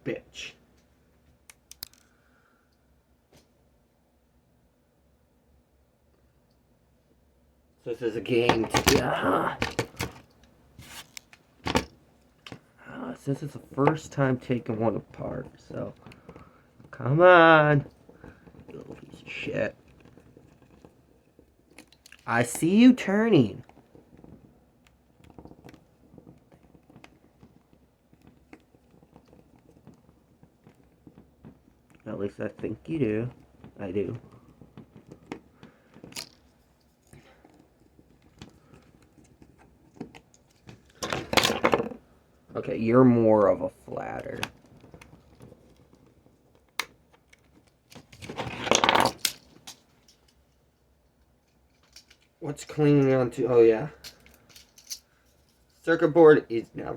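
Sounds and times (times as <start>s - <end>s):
plastic parts clicking and scraping: 1.5s - 2.2s, 13.5s - 22.3s, 23.5s - 42.1s, 43.4s - 52.8s, 53.8s - 55.9s.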